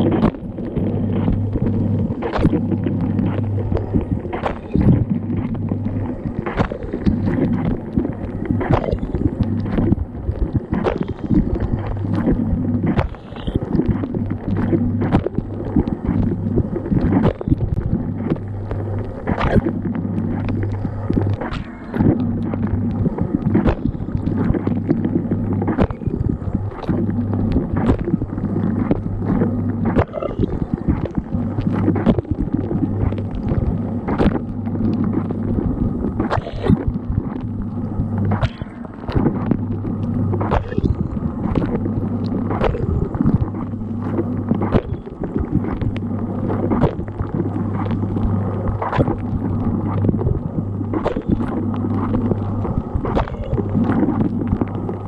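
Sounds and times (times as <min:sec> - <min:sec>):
low pump hum: 0:00.0 - 0:55.0.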